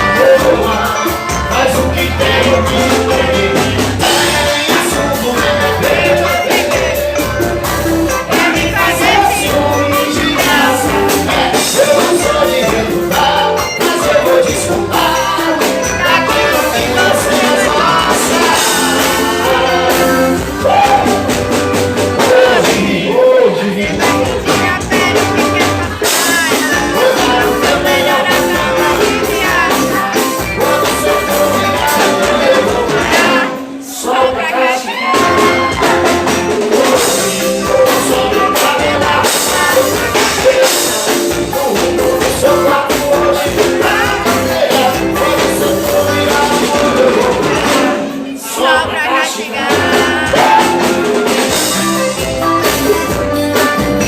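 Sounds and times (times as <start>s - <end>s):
live band music with singer: 0.0s - 54.0s.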